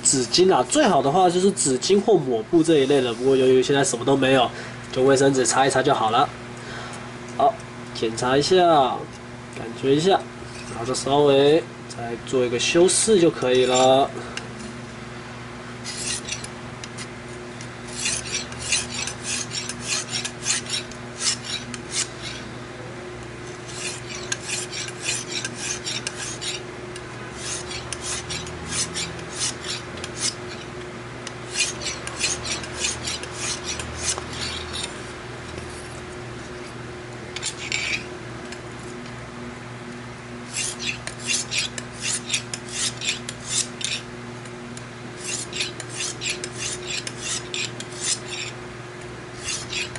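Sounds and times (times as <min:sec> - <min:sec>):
hone rasping along knife edge: 0:02.6 - 0:04.0, 0:10.4 - 0:11.2, 0:12.6 - 0:14.8, 0:15.8 - 0:22.5, 0:23.4 - 0:26.7, 0:27.3 - 0:38.6, 0:40.4 - 0:44.1, 0:44.7 - 0:48.6, 0:49.3 - 0:49.9.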